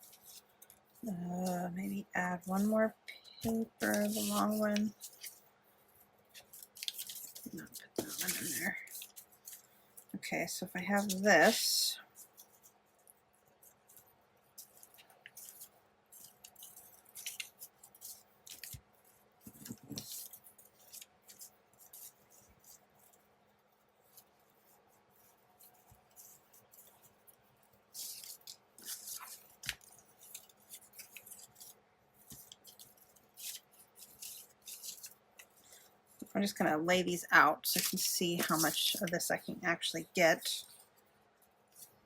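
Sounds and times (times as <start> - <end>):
paper rustling and sliding: 6.3 - 10.1, 37.7 - 39.2.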